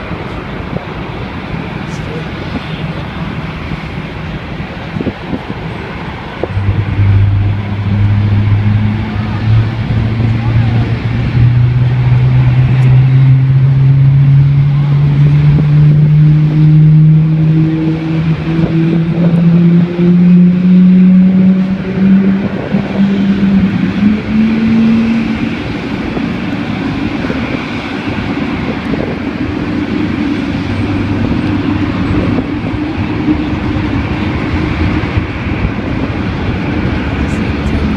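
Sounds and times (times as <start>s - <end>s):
jet engine rumble: 0.0s - 37.9s.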